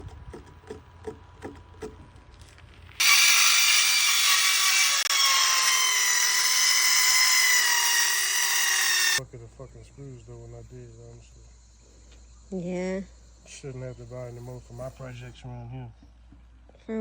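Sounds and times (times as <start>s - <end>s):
power tool motor whining: 3.0s - 9.2s.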